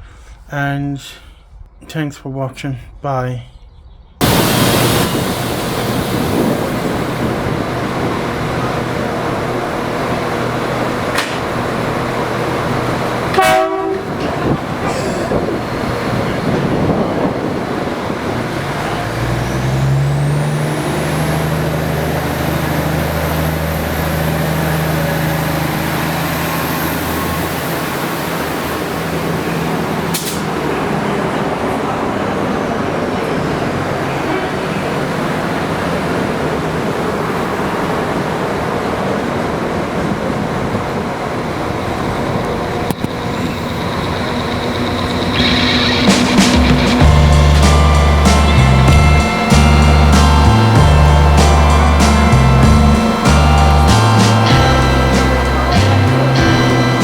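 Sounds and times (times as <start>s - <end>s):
high whine: 4.1s - 57.0s
diesel railcar engine running: 4.2s - 57.0s.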